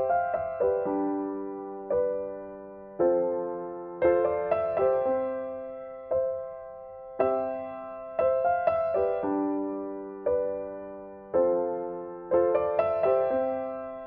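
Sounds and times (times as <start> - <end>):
soft piano chords: 0.0 - 14.0.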